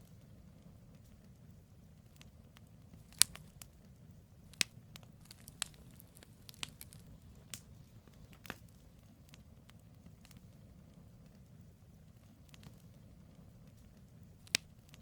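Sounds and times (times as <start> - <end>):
campfire logs crackling: 0.0 - 15.0
sharp wood snaps: 3.0 - 3.7, 4.5 - 7.7, 14.4 - 15.0.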